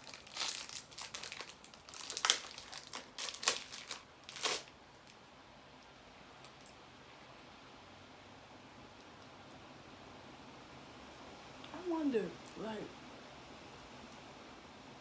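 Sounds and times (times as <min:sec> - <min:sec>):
plastic candy wrapper crinkling: 0:00.0 - 0:05.2.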